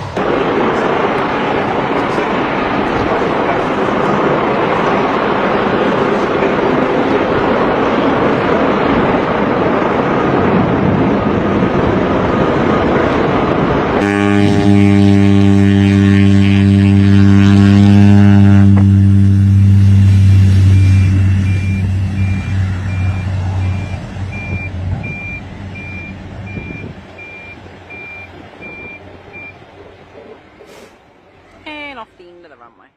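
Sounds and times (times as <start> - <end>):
heavy engine running: 0.0 - 32.6
regular beeping: 20.7 - 30.6.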